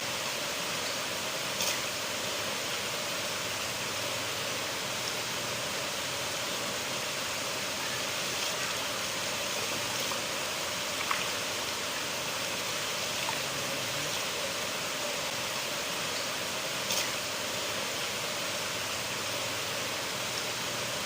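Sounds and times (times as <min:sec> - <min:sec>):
river water rushing: 0:00.0 - 0:21.0
small water splashes: 0:07.6 - 0:17.4.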